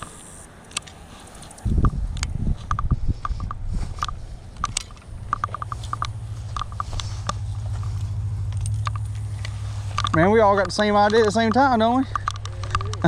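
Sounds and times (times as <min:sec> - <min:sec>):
low steady hum: 0:00.0 - 0:13.0
fishing reel clicking: 0:08.6 - 0:13.0.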